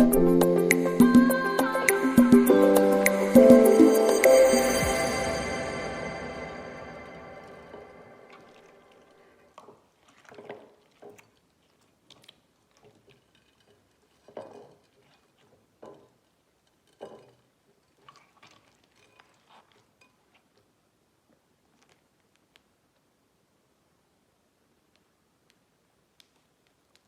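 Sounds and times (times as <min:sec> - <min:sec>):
background music: 0:00.0 - 0:09.0.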